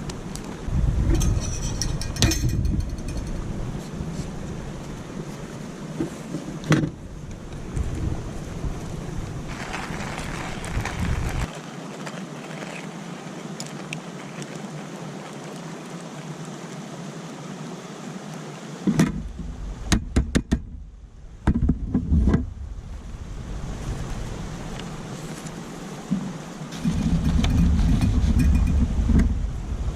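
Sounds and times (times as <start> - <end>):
wind buffeting microphone: 0.0 - 5.3, 6.9 - 11.5, 20.6 - 29.9
sharp knocks and thumps: 18.9 - 22.6, 26.1 - 29.5.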